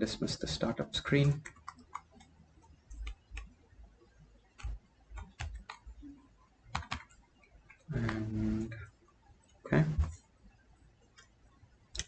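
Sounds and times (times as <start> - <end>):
computer keyboard and mouse clicks: 1.1 - 3.5, 4.5 - 6.0, 6.7 - 8.3, 11.1 - 12.0.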